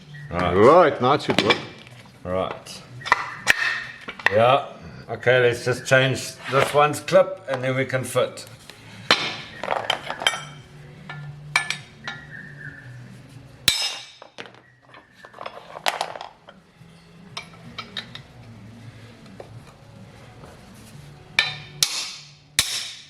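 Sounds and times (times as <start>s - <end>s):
metal parts clinking: 17.3s - 18.3s.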